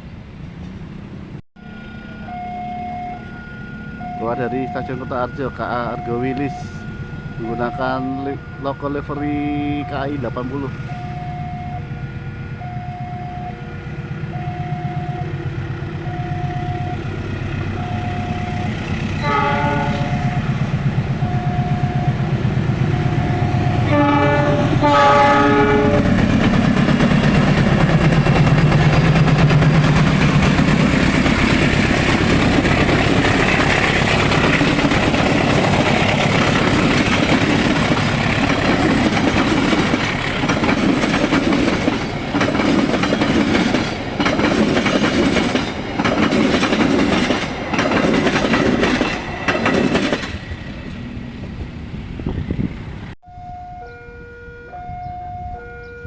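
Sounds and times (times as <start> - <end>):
train rumbling past: 0.0 - 56.0
level crossing warning bell: 1.6 - 15.4, 17.7 - 20.6
locomotive horn: 17.7 - 20.6, 23.0 - 26.2
wheels clicking over rail joints: 26.0 - 51.1.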